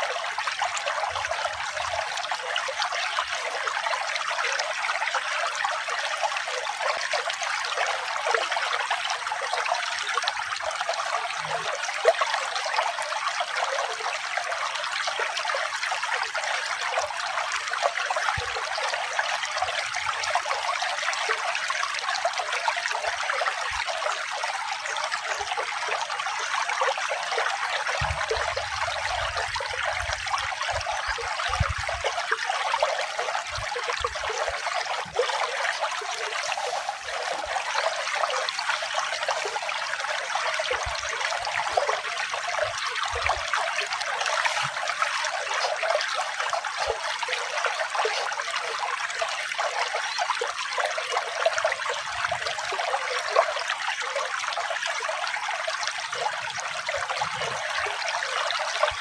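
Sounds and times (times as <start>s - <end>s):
water trickling and splashing: 0.0s - 59.0s.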